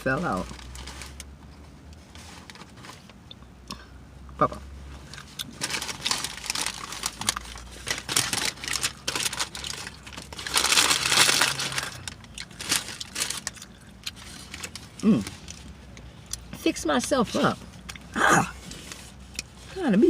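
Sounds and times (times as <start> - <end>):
sandwich wrapper crinkling: 5.0 - 15.8.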